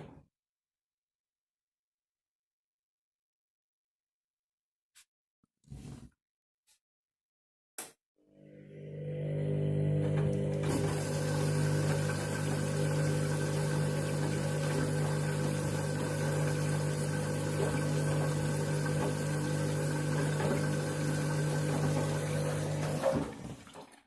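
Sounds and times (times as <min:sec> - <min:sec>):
washing machine motor hum: 0:08.3 - 0:24.0.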